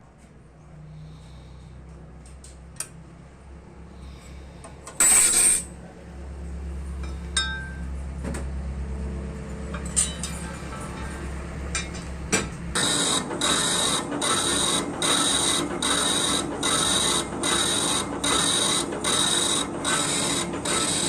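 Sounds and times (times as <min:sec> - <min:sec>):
lathe motor humming: 0:08.9 - 0:21.0.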